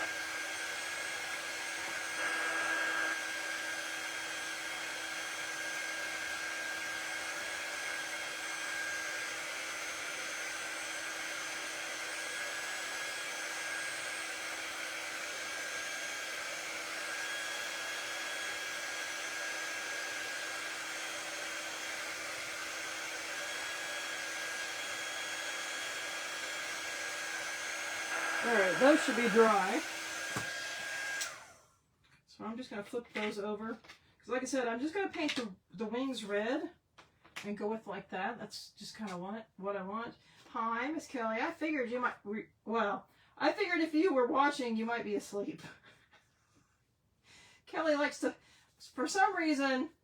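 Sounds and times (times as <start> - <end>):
heat tool blowing air with whine: 0.0 - 31.5.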